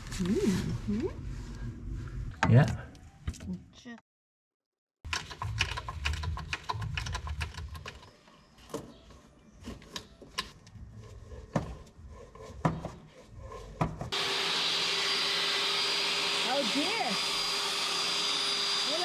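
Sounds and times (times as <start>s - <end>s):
motor running: 14.2s - 19.0s.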